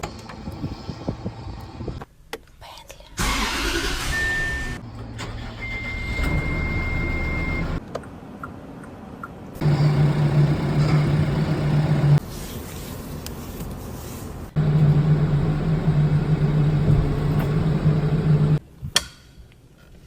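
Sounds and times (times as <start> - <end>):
diesel engine running: 9.6 - 12.2, 14.6 - 18.6.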